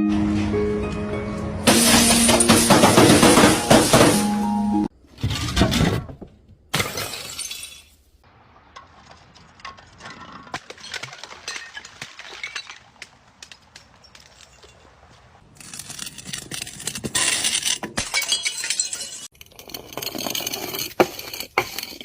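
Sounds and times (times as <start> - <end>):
glass bottles shattering: 1.7 - 4.3, 6.7 - 8.1, 9.6 - 15.1, 17.2 - 19.4
broken glass tinkling: 13.8 - 15.0, 18.0 - 19.3.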